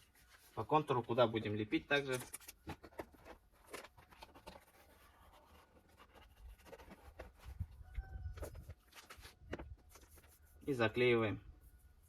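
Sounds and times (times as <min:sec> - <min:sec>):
rubbing a plastic panel: 0:02.3 - 0:10.6
faint high-pitched squeak: 0:04.3 - 0:10.8.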